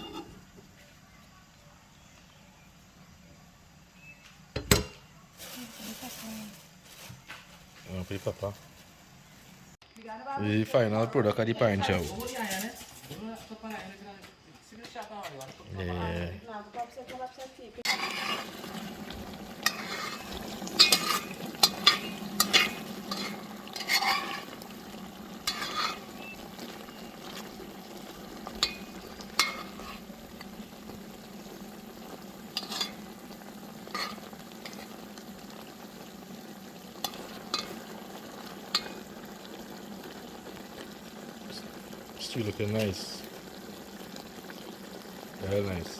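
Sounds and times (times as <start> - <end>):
spoon stirring and scraping pot: 0.0 - 0.5, 17.8 - 31.5, 32.4 - 35.3, 37.0 - 39.0
food sizzling: 0.0 - 0.8, 4.0 - 13.6, 15.7 - 17.1, 17.7 - 45.9.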